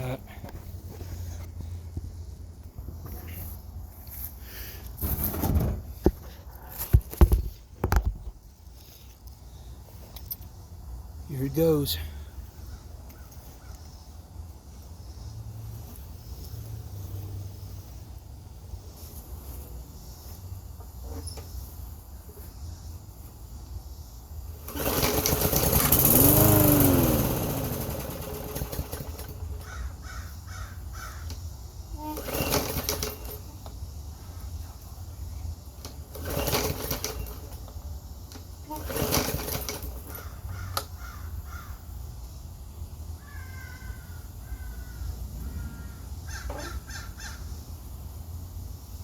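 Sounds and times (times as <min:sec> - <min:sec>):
lawn mower engine revving: 0:24.4 - 0:29.8, 0:31.9 - 0:33.7, 0:35.7 - 0:40.8.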